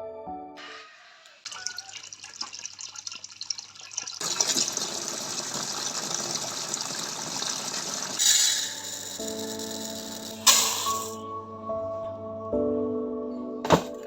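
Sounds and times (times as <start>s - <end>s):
water running from a tap: 1.0s - 11.1s
light clicks and drips: 1.5s - 4.3s.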